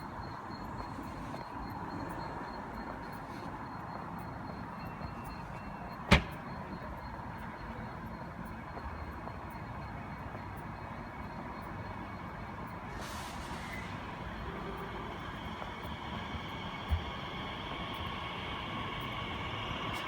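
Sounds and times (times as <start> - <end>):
faint steady tone: 0.0 - 20.0
railway station hum: 0.0 - 20.0
loud sharp knock: 6.1 - 6.4.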